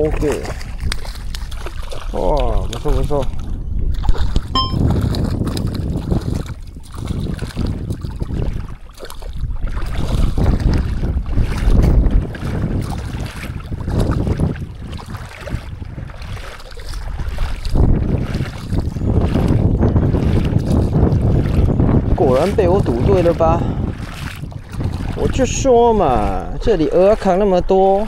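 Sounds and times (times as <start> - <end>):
wind buffeting microphone: 0.0 - 28.0.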